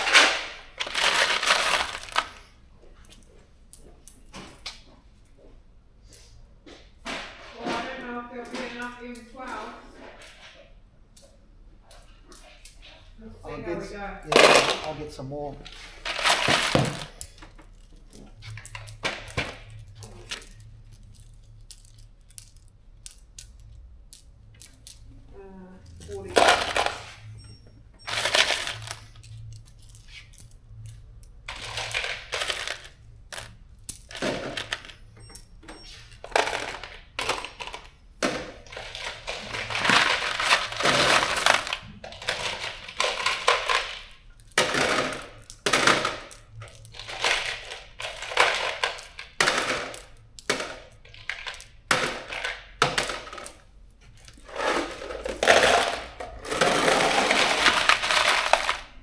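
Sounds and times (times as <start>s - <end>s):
bolts and nuts clattering: 0.0s - 5.4s, 7.0s - 59.0s.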